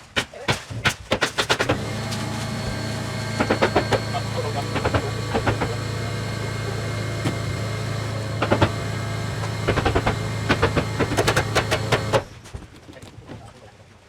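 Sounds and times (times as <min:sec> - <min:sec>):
rapid sharp taps: 0:00.1 - 0:12.3
sharp knocks: 0:00.2 - 0:12.3
low motor hum: 0:01.7 - 0:12.3.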